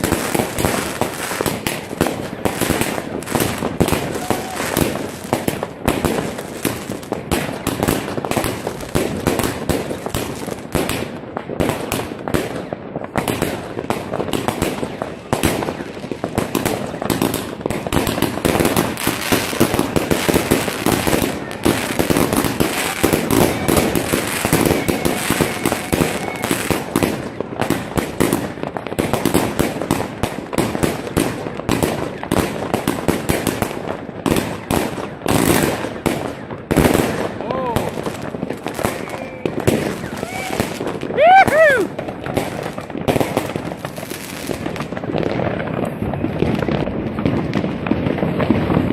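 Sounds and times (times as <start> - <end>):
fireworks banging and crackling: 0.0 - 48.9.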